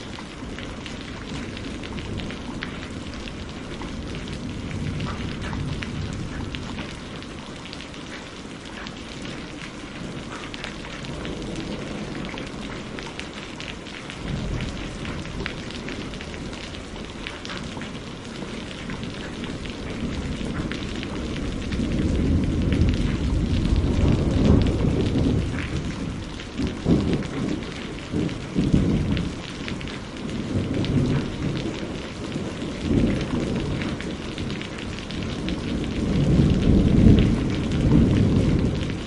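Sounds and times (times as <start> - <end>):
rain falling: 0.0 - 39.0
thunder rolling: 19.2 - 39.0.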